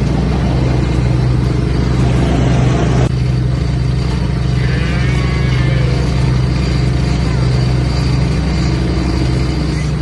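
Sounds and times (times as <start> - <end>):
vehicle engine running: 0.0 - 10.0.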